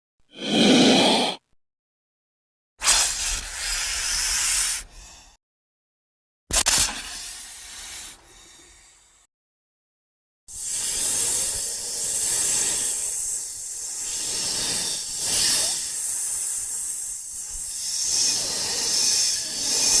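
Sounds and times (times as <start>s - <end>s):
loud breathy creature hiss: 0.3s - 1.4s, 2.8s - 5.4s, 7.0s - 9.3s, 10.5s - 20.0s.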